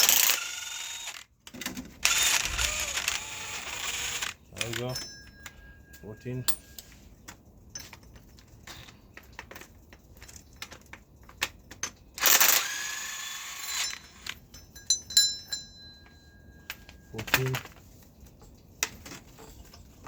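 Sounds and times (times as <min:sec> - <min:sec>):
metal tools clinking: 0:02.0 - 0:07.0, 0:13.6 - 0:17.8.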